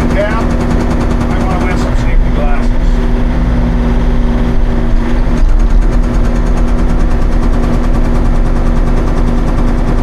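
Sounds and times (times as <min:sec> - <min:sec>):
hydraulic breaker hammer pounding rock: 0:00.0 - 0:02.8, 0:04.9 - 0:10.0
excavator engine running: 0:00.0 - 0:10.0.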